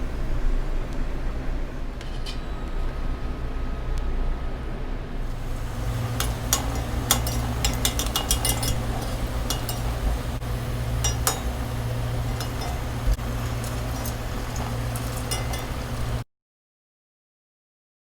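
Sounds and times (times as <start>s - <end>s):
steady low hum: 2.9s - 16.2s
fish deep-frying in oil: 5.3s - 16.2s
metal utensil clinking on pan: 5.4s - 16.2s.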